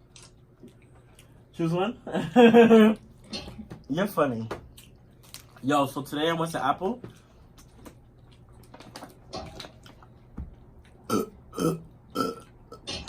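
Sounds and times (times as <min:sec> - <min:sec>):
person burping: 0:11.1 - 0:12.9.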